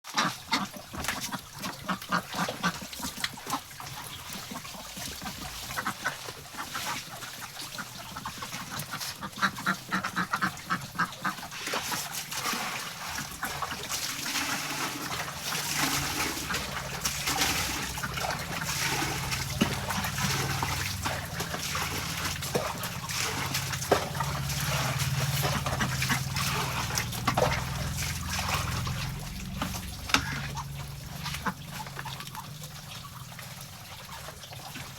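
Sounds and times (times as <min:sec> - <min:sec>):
ducks quacking: 0:00.1 - 0:12.1, 0:13.1 - 0:33.3
steady low hum: 0:14.7 - 0:34.2.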